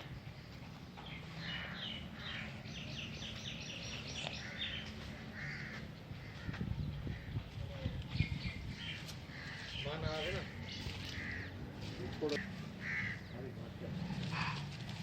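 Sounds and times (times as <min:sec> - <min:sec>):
crows cawing: 0:01.4 - 0:02.5, 0:04.3 - 0:07.4, 0:09.2 - 0:13.4.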